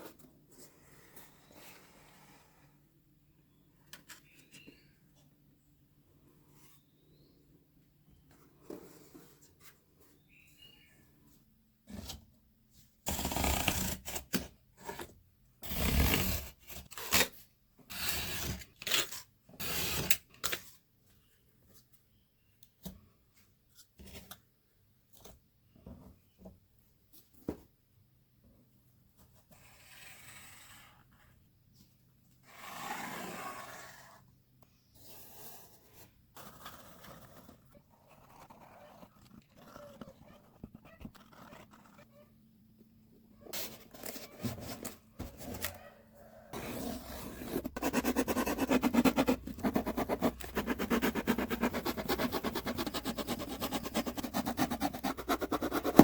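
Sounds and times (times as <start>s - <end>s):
cardboard scraped and torn: 13.1s - 14.5s, 15.6s - 20.2s, 37.9s - 42.2s, 46.6s - 56.0s.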